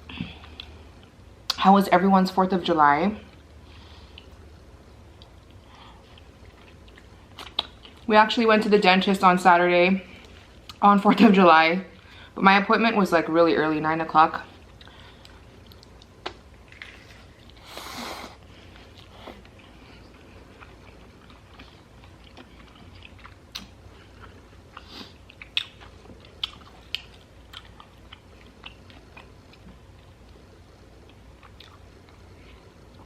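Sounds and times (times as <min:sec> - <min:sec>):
chewing crunchy food: 0:03.3 - 0:08.1, 0:14.5 - 0:17.7, 0:18.4 - 0:33.0.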